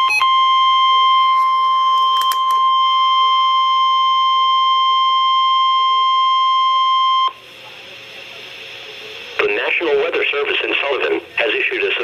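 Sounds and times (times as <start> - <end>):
steady alarm tone: 0.0 - 7.4.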